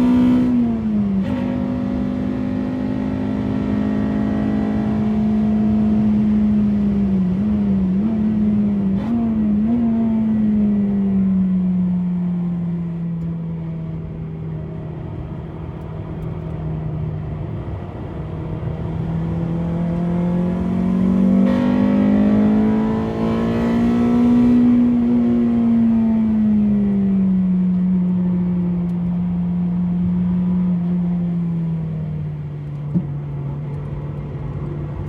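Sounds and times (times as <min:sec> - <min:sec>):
car engine revving under load: 0:17.9 - 0:27.0.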